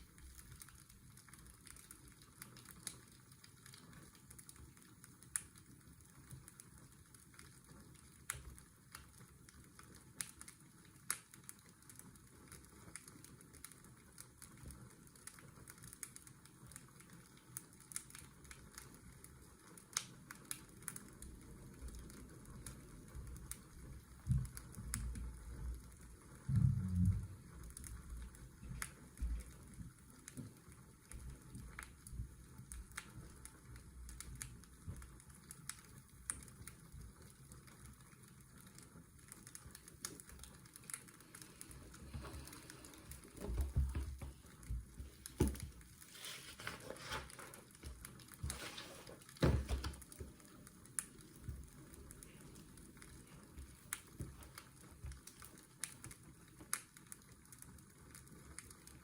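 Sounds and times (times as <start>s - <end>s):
fireplace crackling: 0.0s - 59.0s
washing machine hum: 41.1s - 50.6s.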